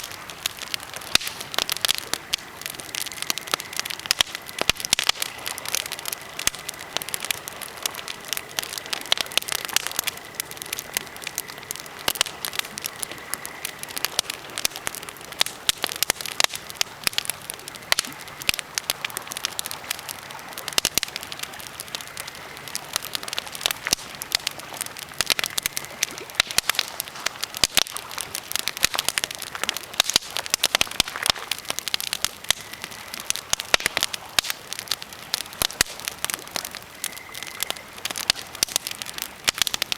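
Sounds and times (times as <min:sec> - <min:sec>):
campfire crackling and popping: 0:00.0 - 0:39.9.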